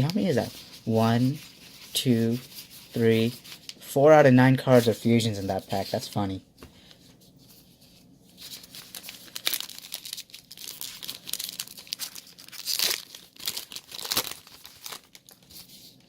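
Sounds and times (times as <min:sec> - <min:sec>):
foil wrapper crackling and tearing: 0:08.4 - 0:16.0.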